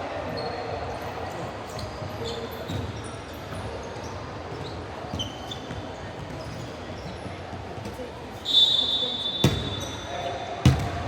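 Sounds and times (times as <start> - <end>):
sneakers squeaking on floor: 0.2 - 11.0
basketball bouncing: 10.6 - 11.0.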